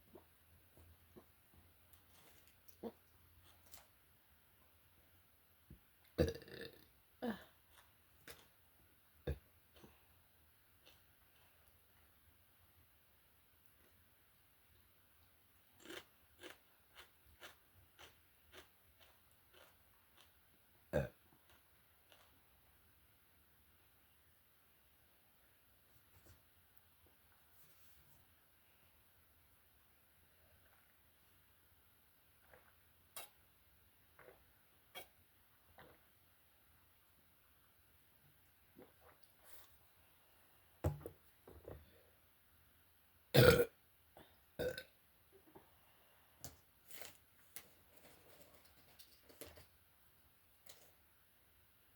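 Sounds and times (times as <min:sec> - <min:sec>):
loud burp: 0:06.2 - 0:07.4, 0:20.9 - 0:21.2, 0:43.3 - 0:43.8, 0:44.6 - 0:44.9.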